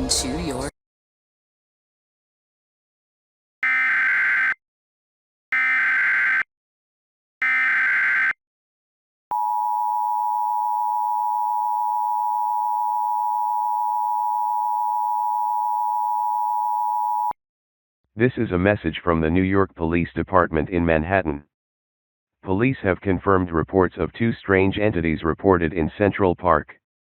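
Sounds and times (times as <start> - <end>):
steady attention tone: 9.3 - 17.3.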